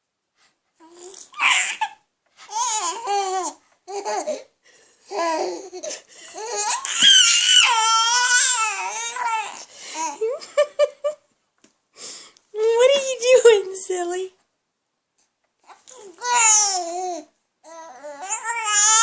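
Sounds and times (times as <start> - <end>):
baby babbling and laughing: 0.8 - 4.5, 5.1 - 10.4, 15.7 - 19.0.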